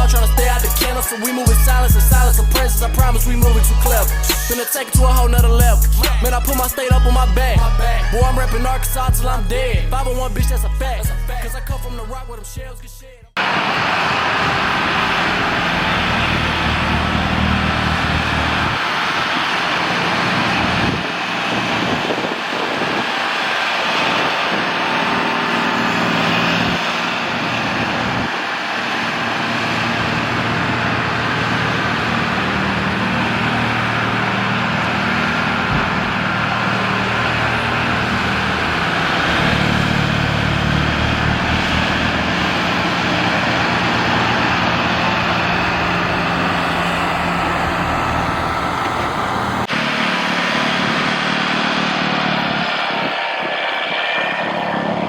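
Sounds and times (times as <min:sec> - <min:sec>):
snowblower rushing noise: 0:00.0 - 0:10.4, 0:13.4 - 0:55.0
tractor diesel engine running: 0:00.0 - 0:55.0.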